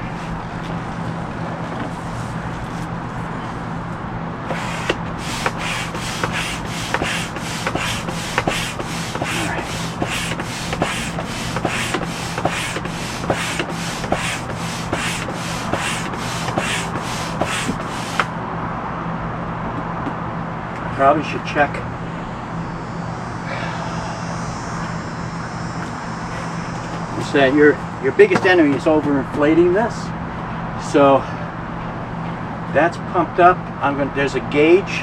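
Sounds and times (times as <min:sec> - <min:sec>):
steady low hum: 0:00.0 - 0:34.8
manual air pump strokes: 0:04.4 - 0:18.3.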